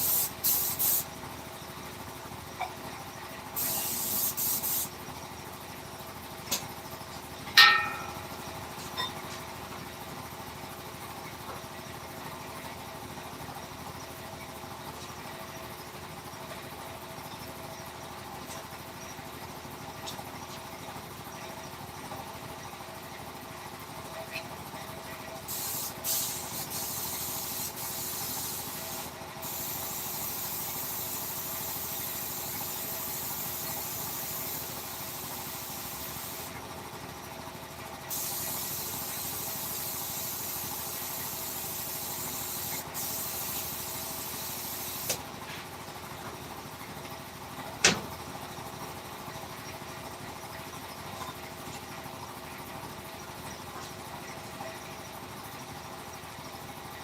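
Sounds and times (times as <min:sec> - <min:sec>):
compressed air hissing: 0:00.0 - 0:01.1, 0:03.6 - 0:04.9, 0:25.5 - 0:36.5, 0:38.1 - 0:45.2
sharp click: 0:47.8 - 0:48.1.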